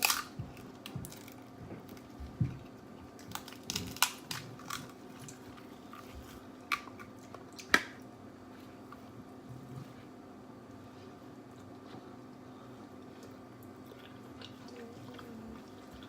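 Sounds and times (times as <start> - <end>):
shells cracking and chewing: 0.0 - 8.1.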